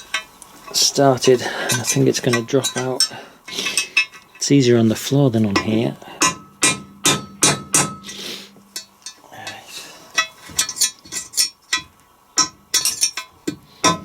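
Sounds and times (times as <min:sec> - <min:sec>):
hammer striking metal punch: 0:05.6 - 0:08.2.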